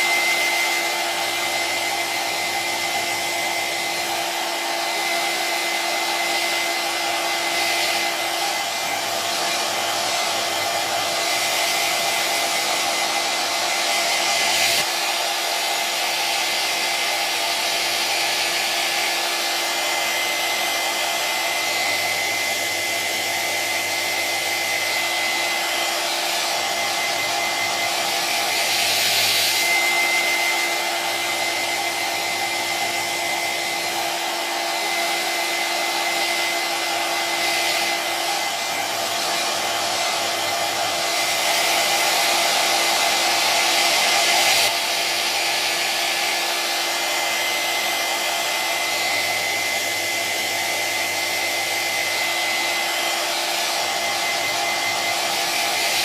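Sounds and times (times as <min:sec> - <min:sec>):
hair dryer running: 0:00.0 - 0:56.0.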